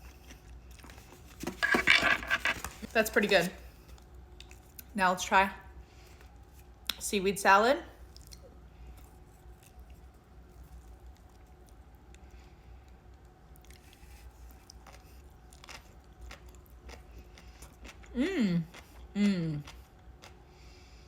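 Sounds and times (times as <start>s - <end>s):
wet chewing: 8.1s - 12.2s, 13.6s - 18.1s.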